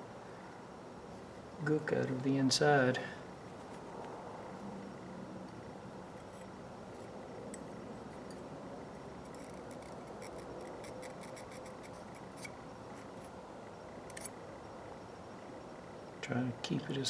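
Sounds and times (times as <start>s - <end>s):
steady background hiss: 0.0s - 17.0s
small tool clicking and scratching: 9.2s - 13.4s, 14.1s - 14.4s.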